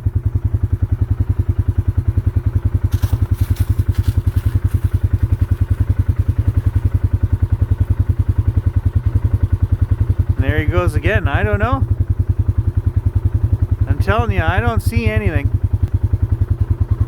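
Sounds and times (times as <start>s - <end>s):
motorbike engine idling: 0.0s - 17.0s
clattering rustles: 2.9s - 5.6s.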